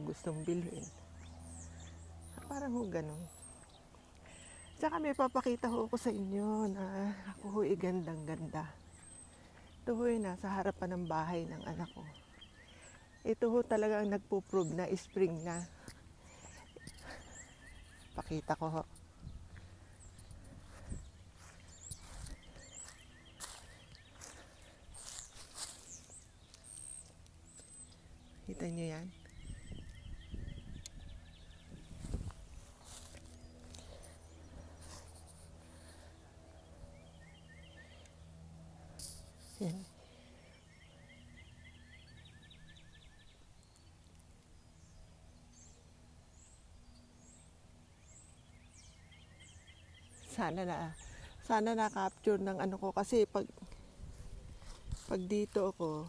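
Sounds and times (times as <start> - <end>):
faint songbirds chirping: 0.0 - 56.0
low steady background hum: 0.0 - 56.0
wind rumbling on microphone: 19.0 - 26.4, 29.1 - 33.6, 53.6 - 55.3
footsteps walking: 19.5 - 27.7, 31.9 - 35.6.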